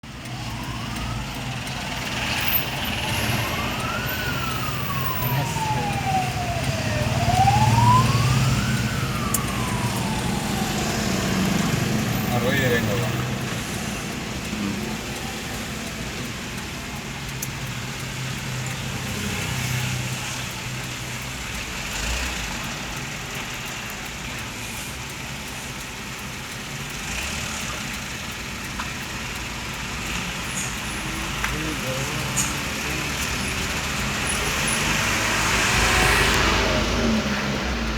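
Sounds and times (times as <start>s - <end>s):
heavy vehicle engine drone: 0.0s - 37.9s
siren wailing: 0.1s - 13.7s, 30.5s - 37.9s.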